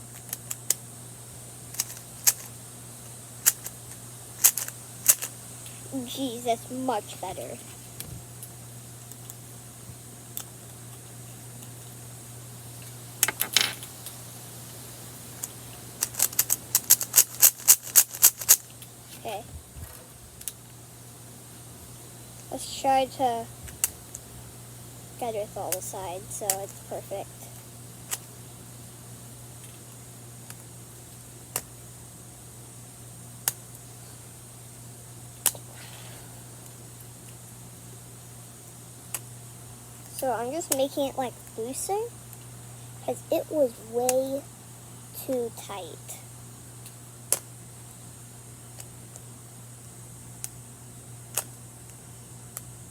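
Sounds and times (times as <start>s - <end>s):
steady low hum: 0.0s - 52.9s
rubik's cube clacking: 1.8s - 2.5s, 15.4s - 18.6s.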